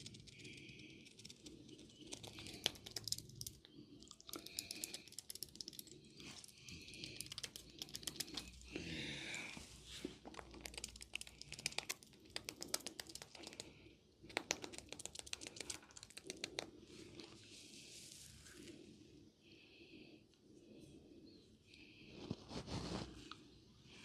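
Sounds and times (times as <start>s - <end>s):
hands rubbing oiled skin: 4.4s - 8.7s, 9.8s - 18.8s.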